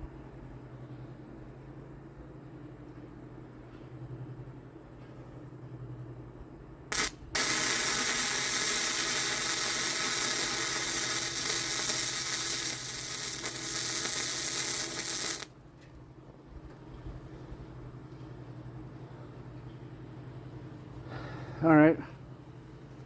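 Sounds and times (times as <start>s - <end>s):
welder arc crackling and sizzling: 6.9s - 15.5s.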